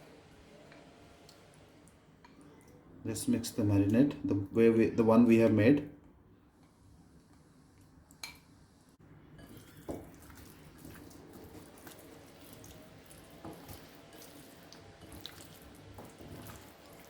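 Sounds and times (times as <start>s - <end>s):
spoon stirring wet mixture: 6.6s - 17.0s.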